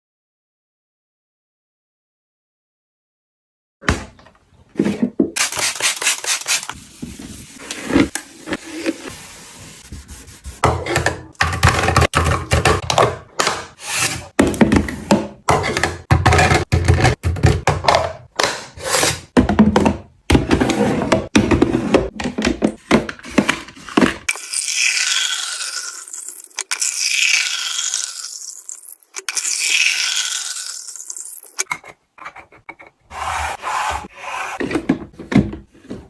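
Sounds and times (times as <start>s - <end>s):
items knocking and thunking: 3.8s - 5.4s, 10.6s - 24.3s, 34.6s - 36.0s.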